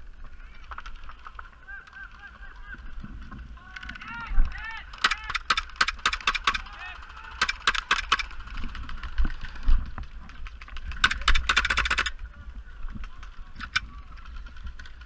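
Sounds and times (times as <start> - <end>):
airsoft guns firing: 4.8 - 9.1, 10.9 - 12.2.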